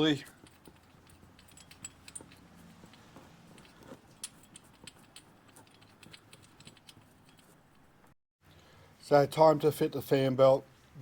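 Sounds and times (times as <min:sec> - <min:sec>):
hand tools clicking and tapping: 0:00.3 - 0:07.8.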